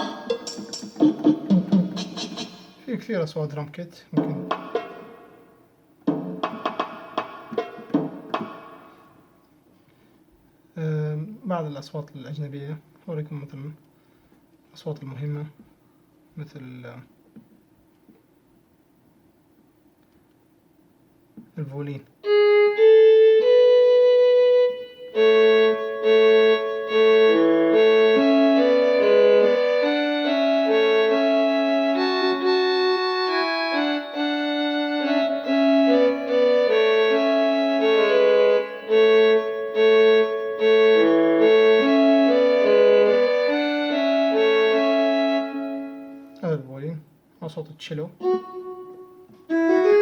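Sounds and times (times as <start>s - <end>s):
keyboard violin and cello melody: 22.2s - 46.4s, 48.2s - 50.0s.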